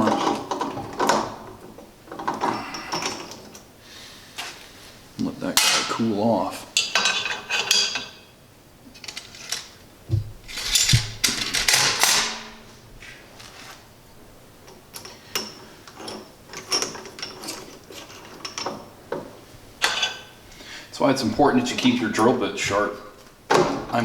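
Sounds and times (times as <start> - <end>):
metal tools clinking and knocking: 6.8 - 8.3, 10.4 - 12.6, 15.0 - 18.9, 19.8 - 20.3.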